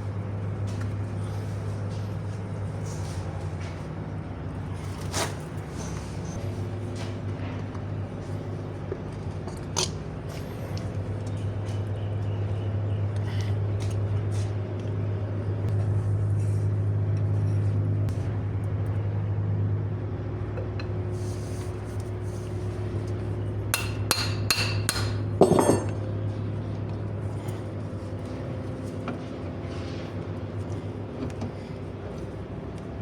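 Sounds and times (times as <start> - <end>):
steady low hum: 0.0 - 33.0
metallic hammer strikes: 23.8 - 26.0.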